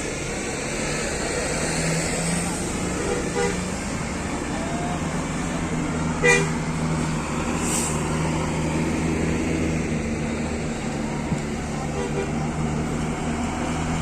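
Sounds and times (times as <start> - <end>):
bus engines idling: 0.0 - 14.0
bus horn toot: 2.9 - 3.8, 6.2 - 6.6, 11.8 - 12.4
brief air hiss: 7.6 - 8.1.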